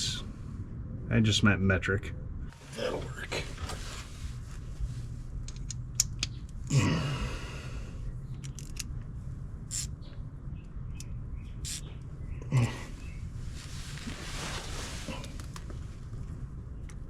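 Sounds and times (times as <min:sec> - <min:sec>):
steady low hum: 0:00.0 - 0:17.0
metallic clicks of hand tools: 0:08.4 - 0:08.9.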